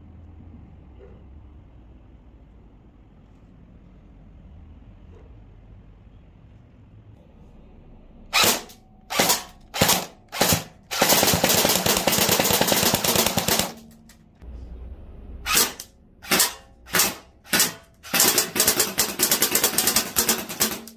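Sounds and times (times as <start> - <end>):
airsoft rifle firing: 8.3 - 14.2, 15.5 - 20.9.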